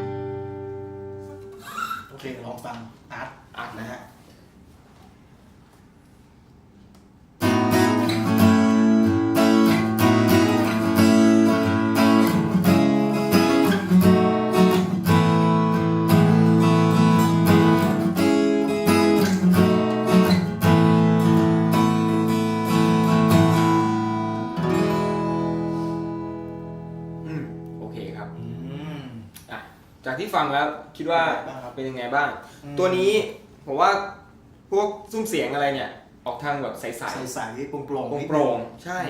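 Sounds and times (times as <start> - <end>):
acoustic guitar strummed and picked: 0.0 - 2.1, 7.4 - 27.9.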